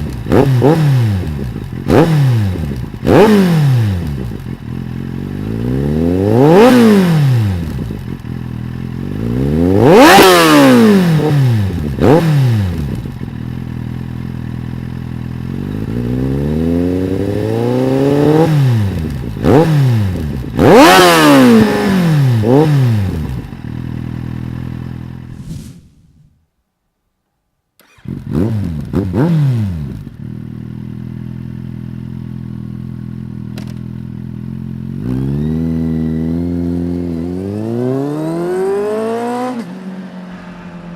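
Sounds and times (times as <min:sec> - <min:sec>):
motorcycle engine revving: 0:00.0 - 0:25.8, 0:27.8 - 0:40.9
motorcycle flybys: 0:25.1 - 0:26.4, 0:36.6 - 0:40.9.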